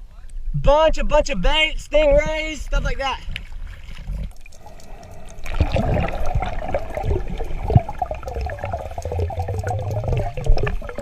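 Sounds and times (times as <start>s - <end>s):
sea water sloshing and bubbling: 3.2s - 11.0s.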